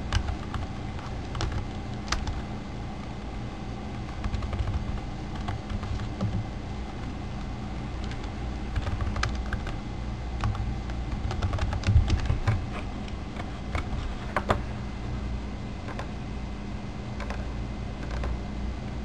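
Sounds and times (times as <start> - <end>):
steady low hum: 0.0 - 19.0
keyboard typing clicks: 0.1 - 2.4, 4.0 - 9.8, 10.4 - 12.6, 15.8 - 16.1, 17.2 - 18.4.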